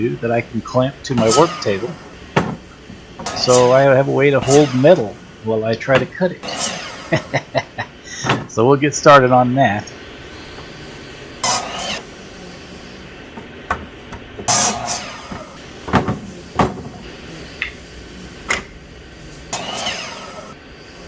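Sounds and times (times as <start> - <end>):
steady low hum: 0.0 - 21.0
scraping or sliding sounds: 0.6 - 7.5, 10.4 - 17.6
knocks and clatters: 1.2 - 3.8, 8.2 - 8.6, 13.3 - 17.1.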